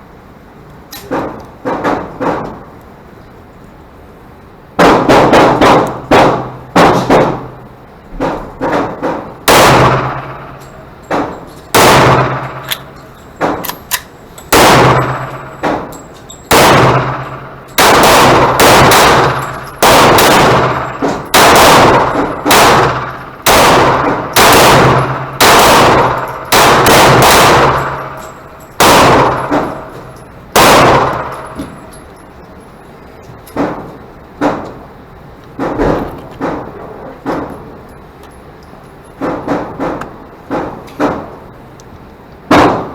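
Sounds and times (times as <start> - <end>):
pistol shots: 4.8 - 7.5, 8.2 - 31.9, 42.5 - 42.9.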